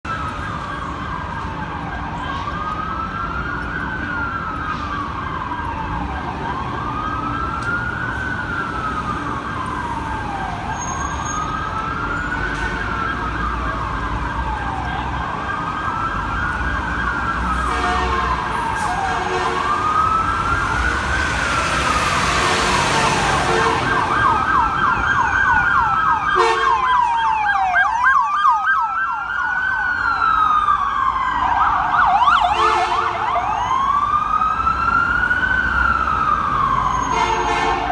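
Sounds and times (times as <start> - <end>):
wailing siren: 0.1 - 37.9
yelping siren: 0.5 - 37.6
air horn blasts: 17.6 - 20.1, 22.2 - 24.6, 26.4 - 27.0, 32.4 - 33.7, 37.1 - 37.9.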